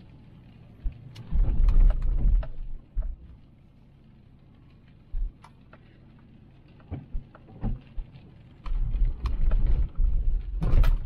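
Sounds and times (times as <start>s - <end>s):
vehicle rumbling on dirt road: 0.0s - 11.0s.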